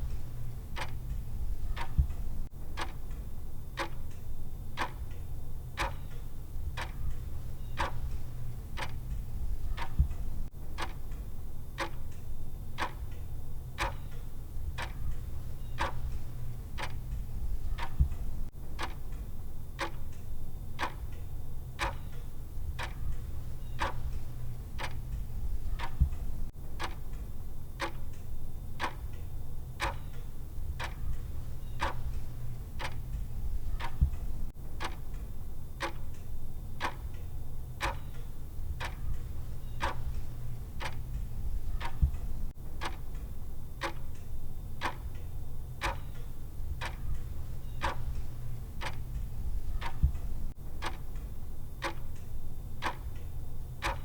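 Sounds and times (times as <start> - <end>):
clock ticking: 0.0 - 11.2, 11.8 - 13.2, 13.8 - 19.2, 19.8 - 21.2, 21.8 - 27.2, 27.8 - 54.0
low steady hum: 0.0 - 54.0.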